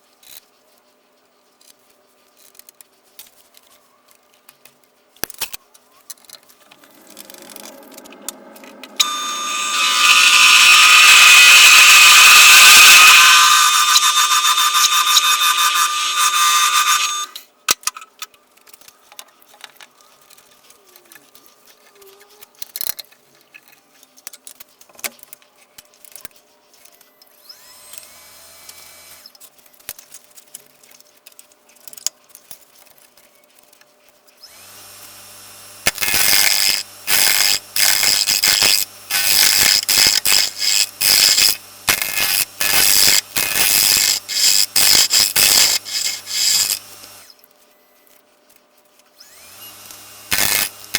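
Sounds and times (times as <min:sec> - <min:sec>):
gouge scraping spinning wood: 0:06.7 - 0:17.4, 0:36.0 - 0:47.3
lathe motor humming: 0:06.7 - 0:17.4.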